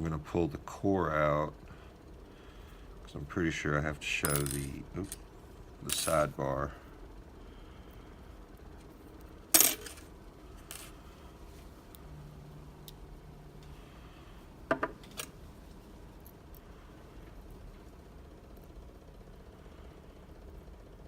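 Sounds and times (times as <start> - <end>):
metal parts clinking: 4.2 - 5.2, 5.8 - 6.3, 9.6 - 11.0.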